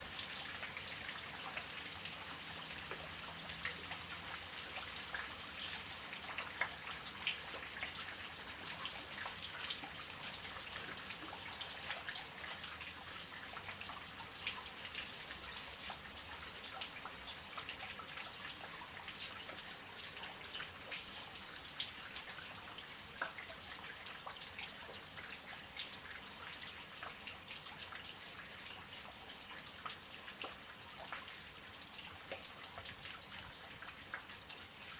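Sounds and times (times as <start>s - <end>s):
soft rain falling: 0.0s - 34.9s.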